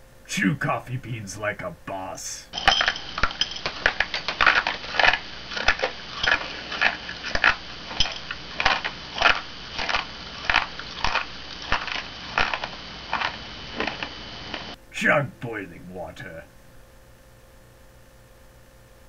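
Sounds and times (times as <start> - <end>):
coffee beans crunching: 2.5 - 14.8.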